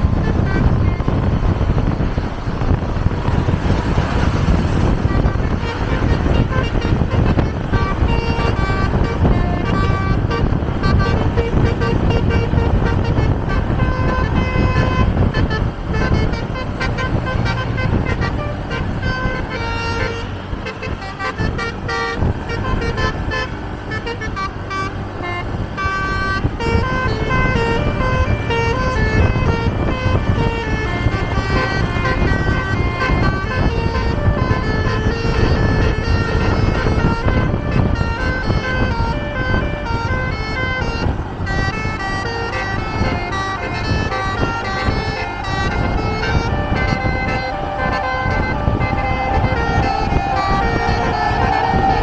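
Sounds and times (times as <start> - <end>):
bus horn playing melodic notes: 0.0 - 52.0
engines and road noise: 0.0 - 52.0.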